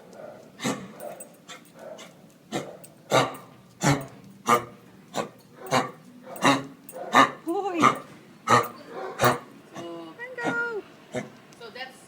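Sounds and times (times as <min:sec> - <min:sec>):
dog barking: 0:00.0 - 0:09.5.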